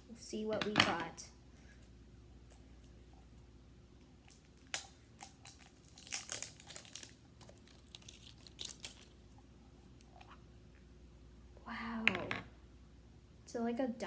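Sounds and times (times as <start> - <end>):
plastic packaging crinkling: 4.3 - 9.3.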